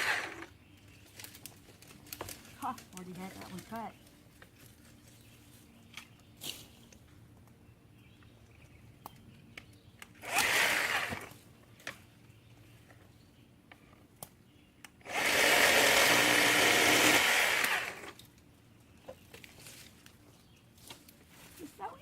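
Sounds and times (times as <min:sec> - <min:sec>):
electric chainsaw whirring: 0:00.0 - 0:00.5, 0:10.2 - 0:11.4, 0:15.0 - 0:18.2
branches clicking: 0:00.0 - 0:07.6.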